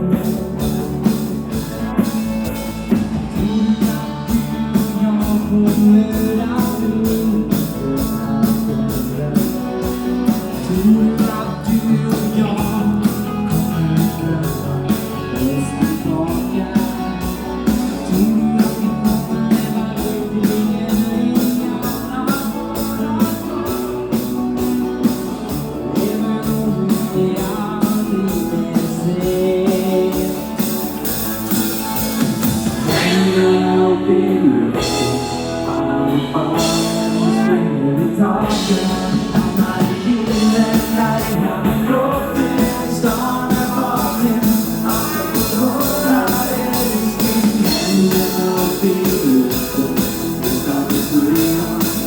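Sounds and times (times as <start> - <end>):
pop-rock song with singing: 0.0 - 52.0.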